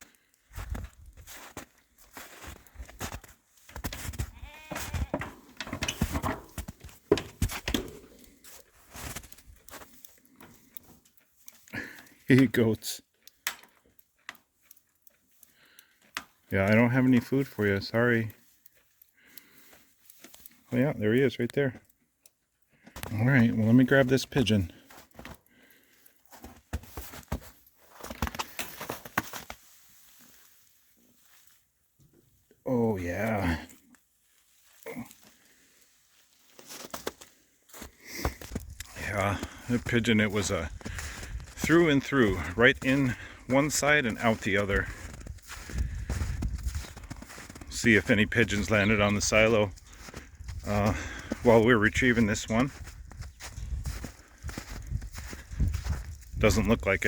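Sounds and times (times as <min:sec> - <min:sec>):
rustling and crackling handling: 0:00.0 - 0:57.0
footsteps: 0:00.5 - 0:12.6, 0:22.8 - 0:32.2, 0:36.2 - 0:57.0
clicks and scrapes: 0:02.2 - 0:11.7, 0:26.2 - 0:29.8
goats bleating: 0:04.2 - 0:05.5.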